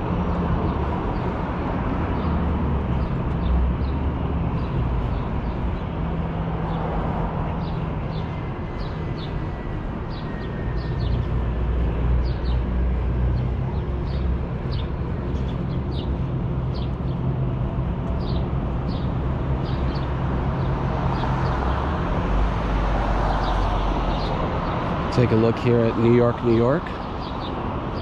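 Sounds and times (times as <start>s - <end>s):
small birds chirping: 7.5s - 17.3s, 18.0s - 21.7s, 23.3s - 28.0s.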